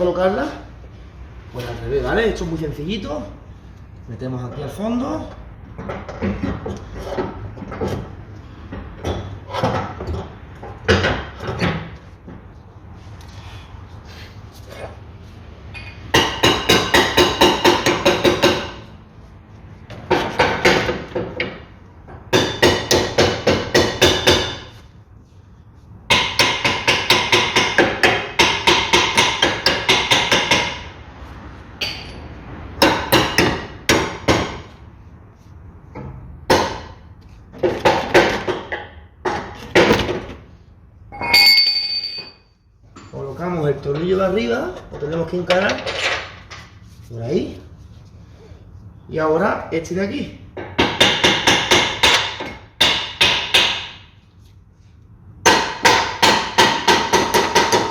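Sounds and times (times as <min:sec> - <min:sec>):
hammer beating on steel: 0:16.2 - 0:18.8, 0:22.3 - 0:24.7, 0:26.1 - 0:30.9, 0:50.7 - 0:54.0, 0:55.4 - 0:57.9.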